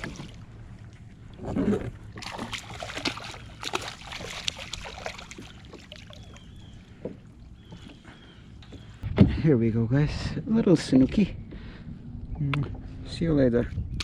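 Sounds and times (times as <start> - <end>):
water splashing: 0.0 - 7.0.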